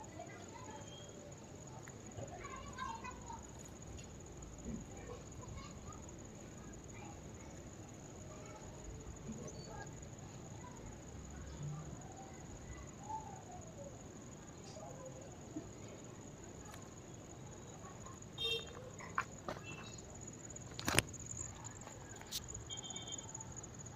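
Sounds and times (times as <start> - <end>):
insects chirring: 0.0 - 23.9.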